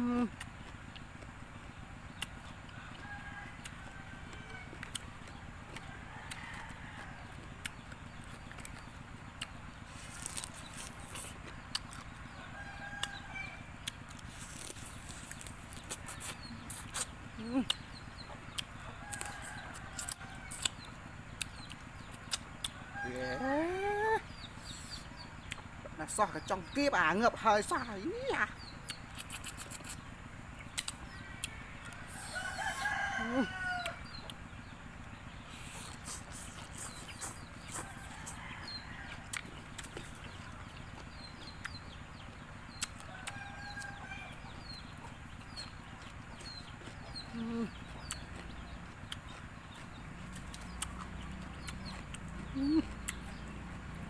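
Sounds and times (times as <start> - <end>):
rooster crowing: 2.7 - 5.0, 5.7 - 7.6, 12.4 - 13.7, 18.8 - 20.7, 22.8 - 24.2, 31.0 - 34.2, 37.7 - 39.4, 43.0 - 44.9
rooster crowing faintly: 30.8 - 34.1.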